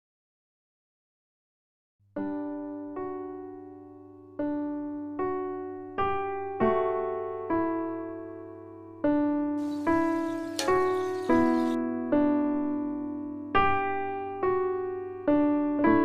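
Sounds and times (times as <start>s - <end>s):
slow electric piano notes: 9.6s - 11.8s.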